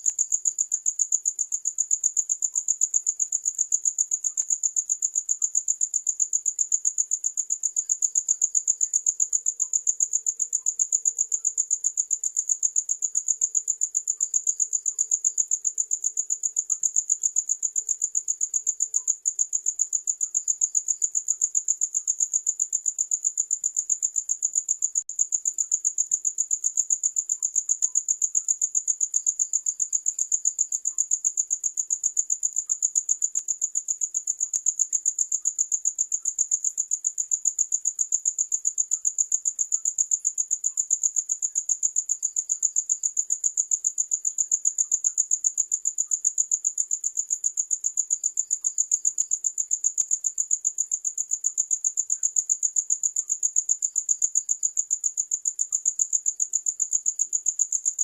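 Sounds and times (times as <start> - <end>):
crickets chirping: 0.0 - 58.0.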